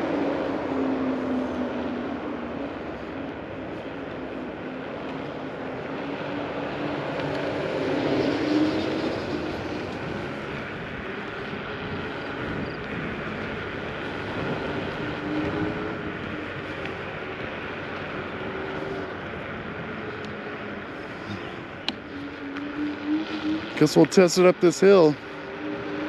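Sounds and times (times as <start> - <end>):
tyre and wind noise: 0.0 - 23.0
electric scooter motor whine: 0.0 - 26.0.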